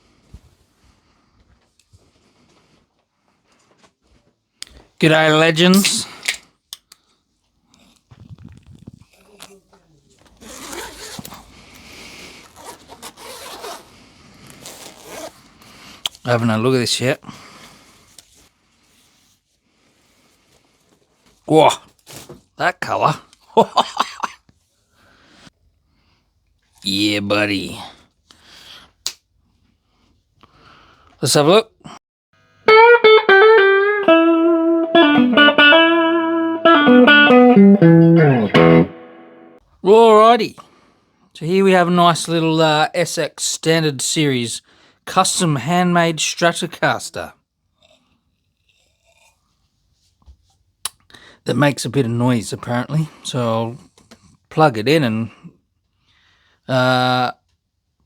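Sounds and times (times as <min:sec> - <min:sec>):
electric guitar melodic riff: 0:05.5 - 0:06.0, 0:32.7 - 0:39.6
zipper being pulled open: 0:10.4 - 0:11.4, 0:12.4 - 0:15.4.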